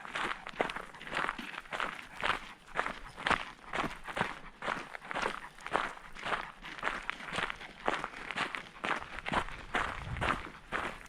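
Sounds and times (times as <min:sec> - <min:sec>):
footsteps on a trail: 0:00.0 - 0:11.0.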